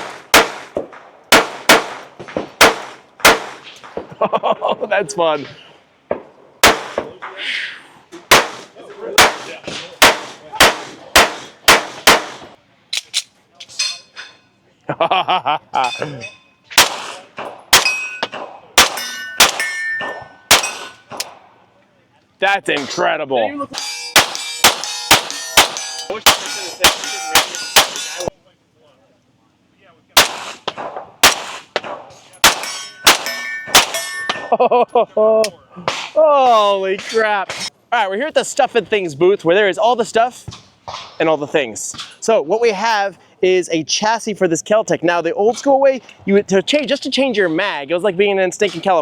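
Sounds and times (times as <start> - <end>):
pistol shots: 0.0 - 4.1, 6.1 - 7.4, 8.3 - 13.2, 16.7 - 21.5, 23.8 - 28.3, 30.2 - 34.5
steel target ringing: 15.8 - 21.2, 23.8 - 28.3, 32.4 - 34.6.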